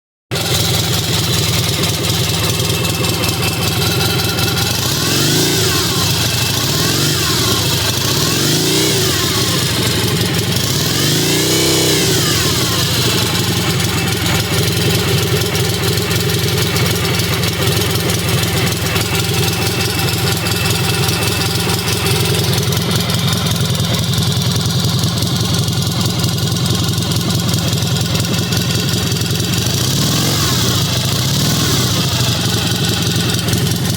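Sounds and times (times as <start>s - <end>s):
motorcycle engine revving and idling: 0.3s - 33.9s.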